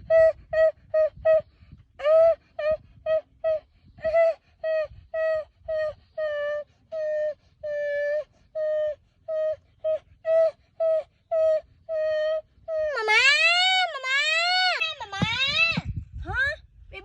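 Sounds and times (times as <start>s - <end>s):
young animal crying: 8.6s - 15.8s.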